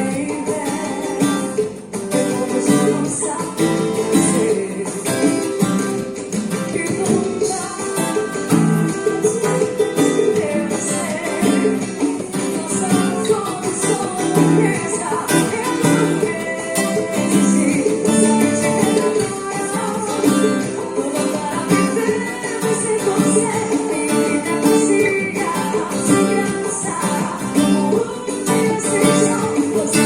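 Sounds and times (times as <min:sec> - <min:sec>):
acoustic guitar chords: 0:00.0 - 0:30.0.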